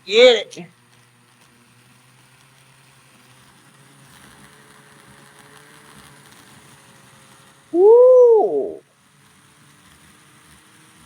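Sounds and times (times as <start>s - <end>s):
model train wheels spinning: 0.7s - 7.7s
small electric motor whining: 0.7s - 7.7s.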